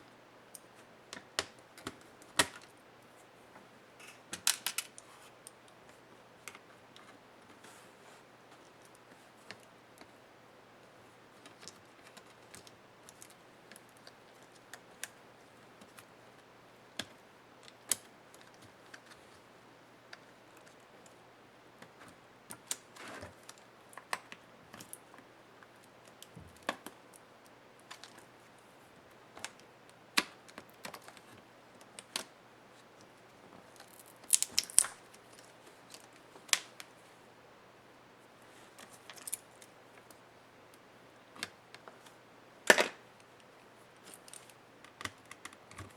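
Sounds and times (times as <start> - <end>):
clicks and taps of small parts: 4.0 - 5.0.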